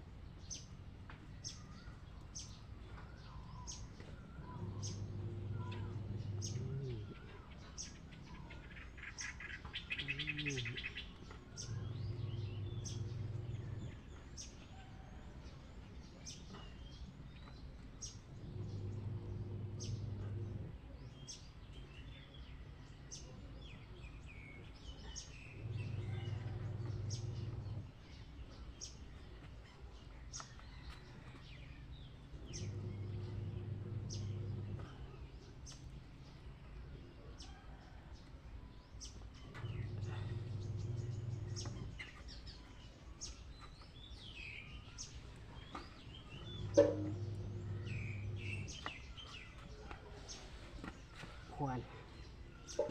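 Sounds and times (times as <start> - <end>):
birds chirping and clicking: 0.0 - 52.9
low droning pitched call: 9.8 - 11.0.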